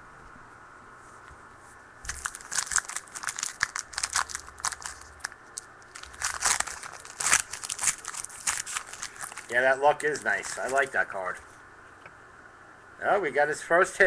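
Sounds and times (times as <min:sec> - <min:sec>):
foil wrapper crinkling and tearing: 0:02.1 - 0:11.4.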